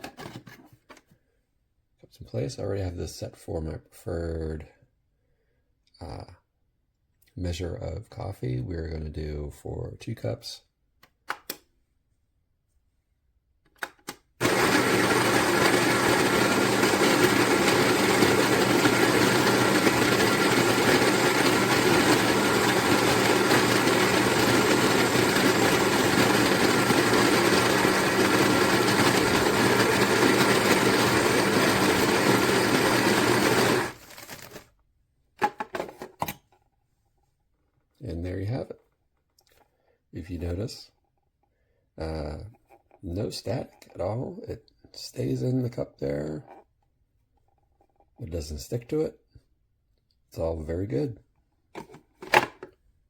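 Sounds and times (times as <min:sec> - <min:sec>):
electric coffee grinder whining: 0:14.4 - 0:34.6.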